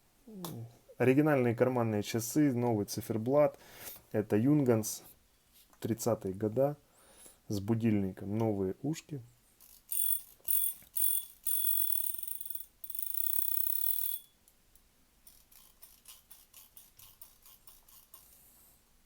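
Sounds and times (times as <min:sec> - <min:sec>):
watch alarm ringing: 0:10.0 - 0:14.3.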